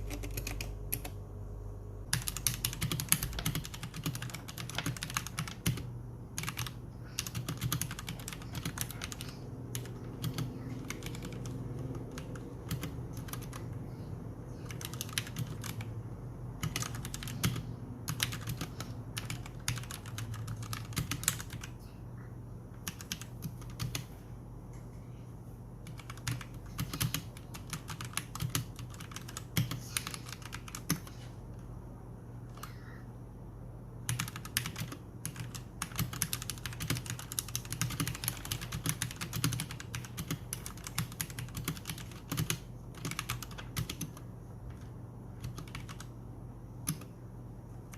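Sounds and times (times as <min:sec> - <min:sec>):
mechanical keyboard typing: 0:00.0 - 0:01.2, 0:02.1 - 0:13.8, 0:14.6 - 0:15.9, 0:16.6 - 0:21.7, 0:22.8 - 0:24.1, 0:25.8 - 0:31.1, 0:34.1 - 0:46.1, 0:46.8 - 0:47.1.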